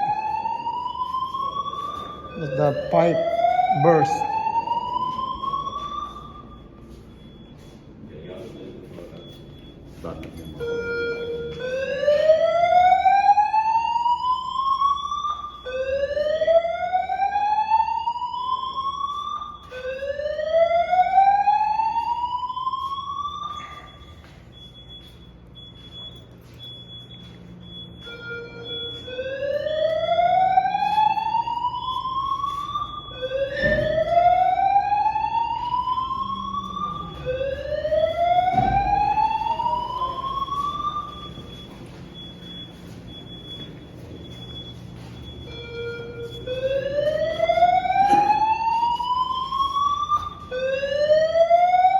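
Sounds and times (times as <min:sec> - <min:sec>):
fire alarm whooping tone: 0:00.0 - 0:51.9
faint high beeping: 0:22.6 - 0:29.2, 0:39.2 - 0:46.9.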